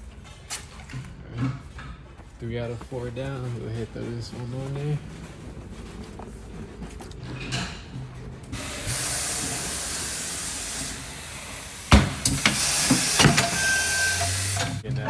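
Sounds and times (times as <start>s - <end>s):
compressed air hissing: 8.5s - 14.8s.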